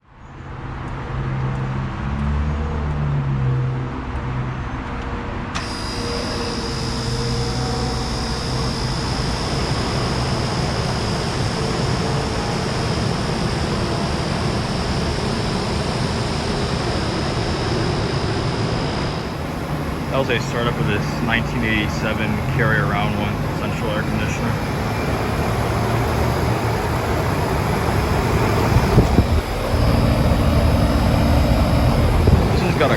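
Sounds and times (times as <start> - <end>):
air conditioner unit running: 5.6 - 32.9
low background rumble: 16.0 - 32.9.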